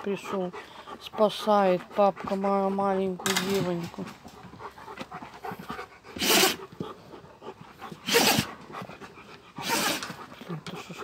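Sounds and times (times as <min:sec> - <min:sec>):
dog breathing: 0:00.0 - 0:11.0
dog sneezing: 0:06.2 - 0:06.6.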